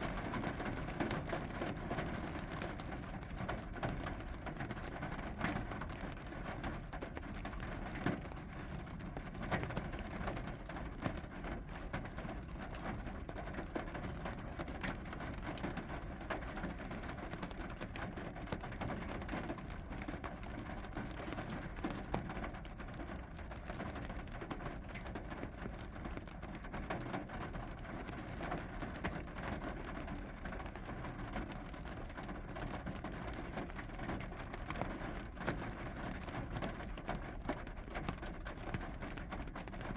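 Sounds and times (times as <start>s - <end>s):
rain falling: 15.1s - 39.9s.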